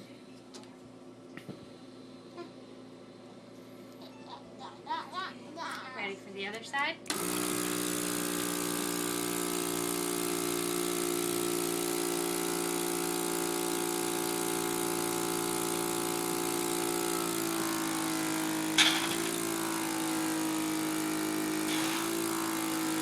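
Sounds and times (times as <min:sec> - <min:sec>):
suction pump motor humming: 0:07.1 - 0:23.0.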